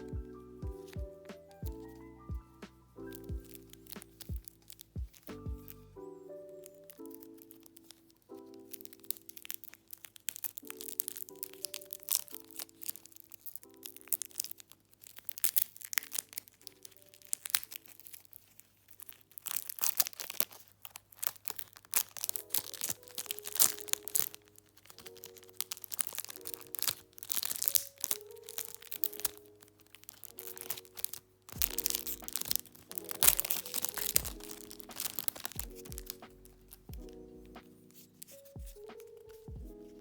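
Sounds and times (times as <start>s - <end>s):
low beat: 0.0s - 2.7s, 4.3s - 5.7s, 39.5s - 39.8s
soft background music: 0.0s - 40.0s
packaging crinkling and tearing: 3.0s - 5.9s, 6.5s - 40.0s.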